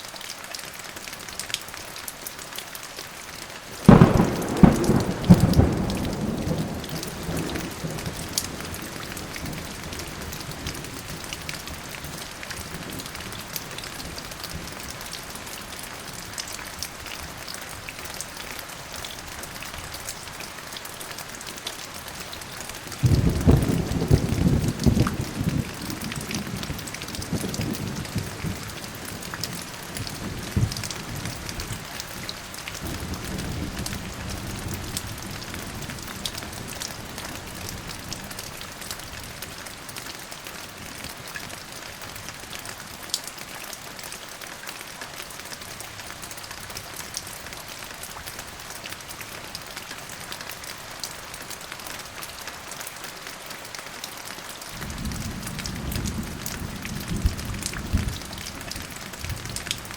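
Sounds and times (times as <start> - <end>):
steady rain falling: 0.0 - 59.9
low rumble of thunder: 3.8 - 14.8, 23.0 - 31.9, 54.8 - 59.8.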